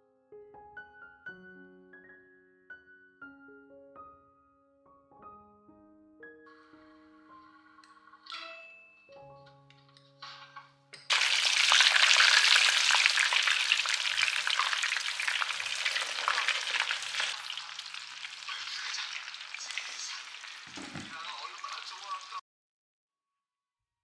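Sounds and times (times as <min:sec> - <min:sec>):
food sizzling in hot oil: 0:11.1 - 0:22.4.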